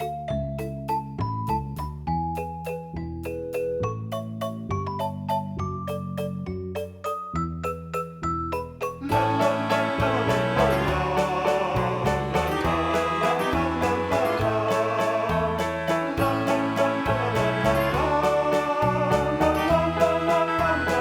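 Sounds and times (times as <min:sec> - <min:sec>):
instrumental music with steady beat: 0:00.0 - 0:21.0
plucked or struck notes: 0:09.0 - 0:21.0.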